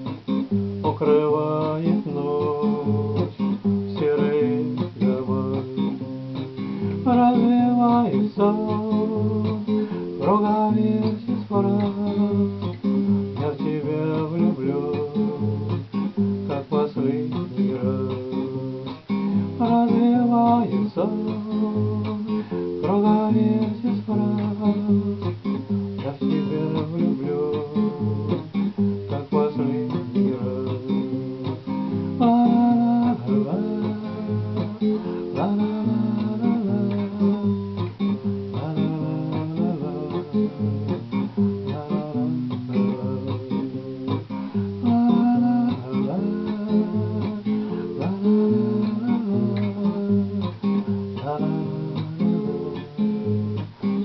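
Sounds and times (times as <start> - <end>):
acoustic guitar chords: 0.0 - 54.0.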